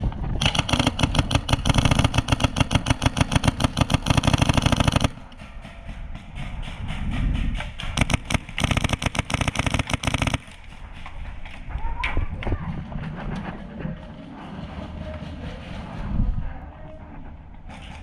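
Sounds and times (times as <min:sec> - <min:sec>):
airsoft gun firing rapidly: 0:00.4 - 0:05.4, 0:07.9 - 0:10.6.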